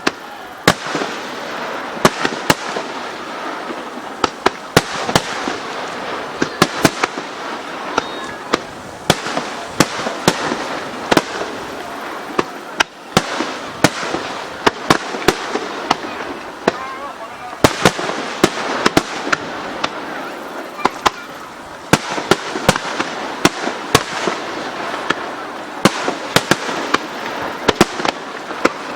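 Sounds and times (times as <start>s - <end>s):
fireworks bangs: 0.0s - 28.9s
fireworks crackle: 0.0s - 28.9s.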